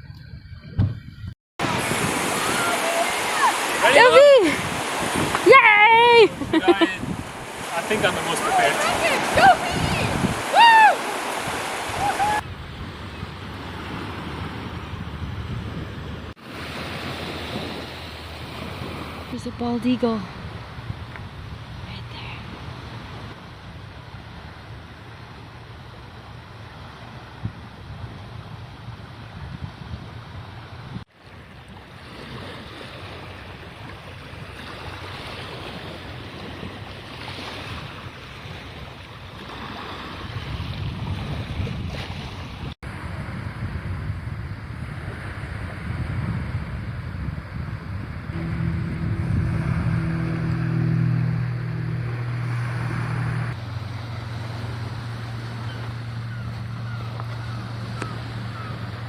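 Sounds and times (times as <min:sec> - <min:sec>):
wind buffeting microphone: 0:00.0 - 0:25.0, 0:27.0 - 0:31.0, 0:32.3 - 0:59.0
rushing water: 0:01.6 - 0:15.3, 0:16.0 - 0:27.3, 0:30.4 - 0:43.1, 0:48.0 - 0:59.0
motor droning: 0:48.1 - 0:59.0
rushing noise: 0:48.3 - 0:54.9.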